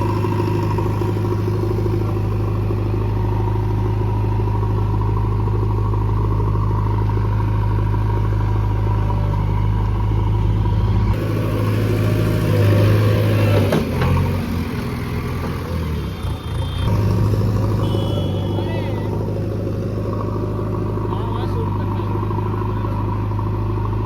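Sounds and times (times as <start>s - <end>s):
excavator diesel engine: 0.0s - 24.0s.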